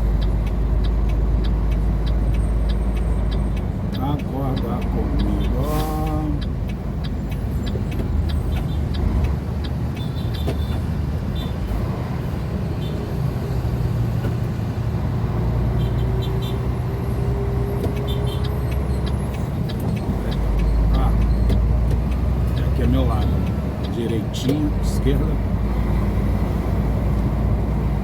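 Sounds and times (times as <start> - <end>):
diesel truck engine drone: 0.0 - 28.0.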